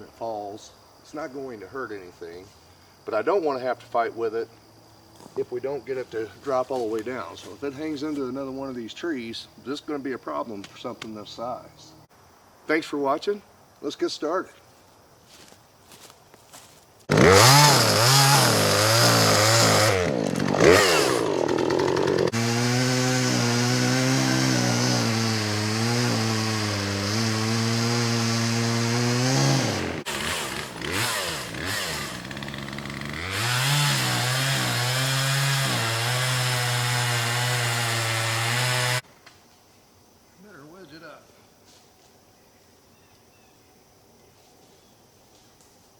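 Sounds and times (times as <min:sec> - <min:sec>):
chainsaw cutting into wood: 0:17.1 - 0:39.0.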